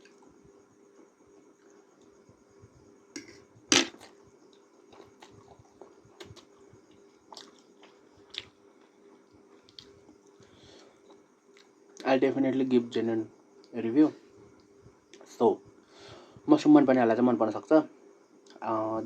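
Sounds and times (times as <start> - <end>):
person chewing noodles: 4.5 - 8.9, 9.7 - 10.4.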